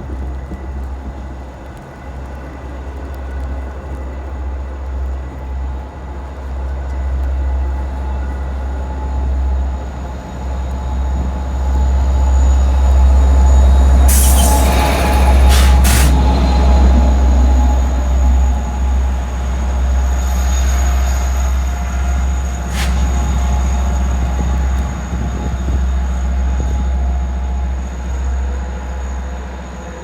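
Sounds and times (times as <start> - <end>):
train rumble: 0.0 - 30.0
loud hiss: 14.0 - 16.8, 22.5 - 23.9.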